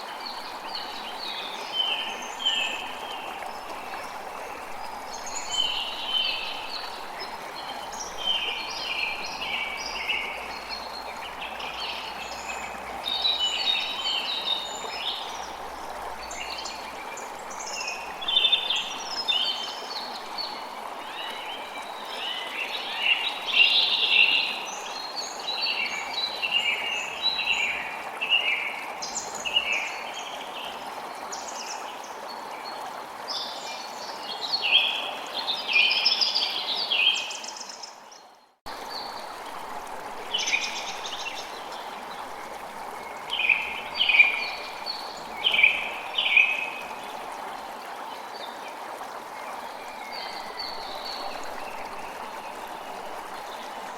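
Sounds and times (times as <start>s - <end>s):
forest birds chirping and trilling: 43.0s - 47.2s.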